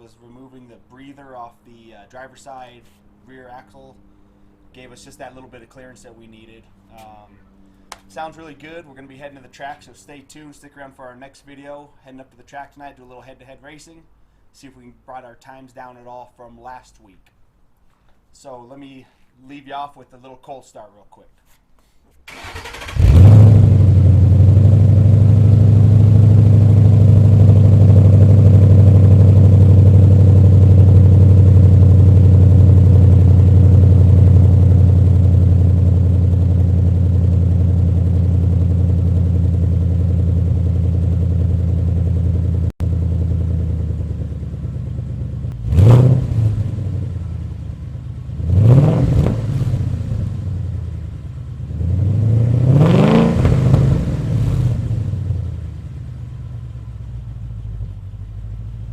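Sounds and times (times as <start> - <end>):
car engine fast idle: 22.3 - 33.8
car engine revving: 22.3 - 55.6.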